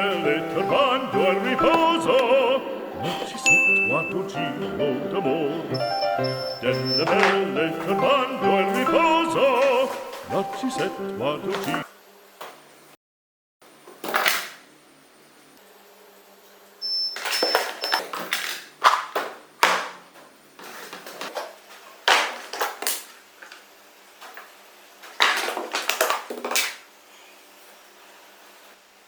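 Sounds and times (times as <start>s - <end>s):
high beeping: 0.0s - 11.8s.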